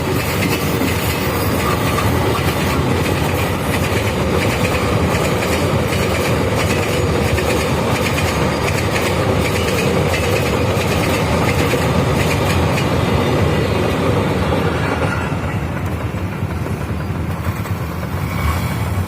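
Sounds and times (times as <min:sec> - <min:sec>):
low train rumble: 0:00.0 - 0:19.0
train wheels clacking on rails: 0:00.0 - 0:19.0.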